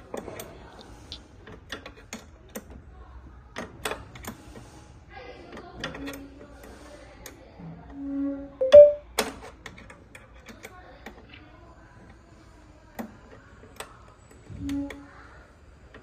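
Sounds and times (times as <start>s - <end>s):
brief low tone: 8.6s - 9.0s.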